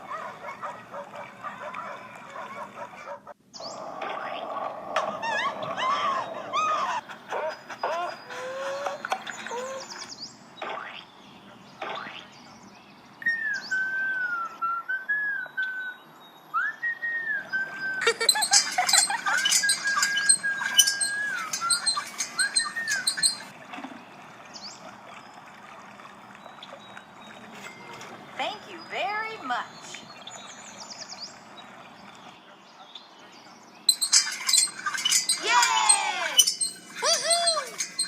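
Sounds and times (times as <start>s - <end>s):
high whistle-like chirping: 19.4s - 23.5s.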